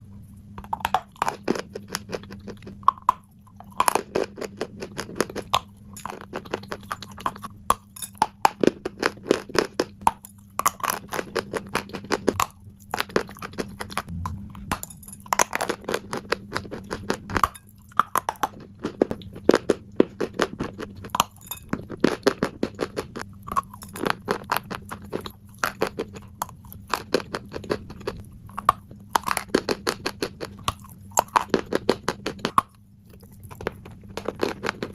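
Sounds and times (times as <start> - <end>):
steady low hum: 0.0 - 34.9
chalk crunching while chewed: 0.6 - 14.1, 14.7 - 34.9.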